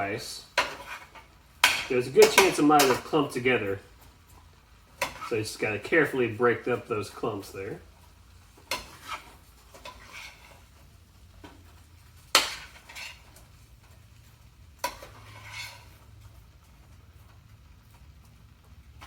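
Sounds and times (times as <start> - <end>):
utensil scraping and knocking a pan: 0.0 - 7.4, 8.5 - 16.4.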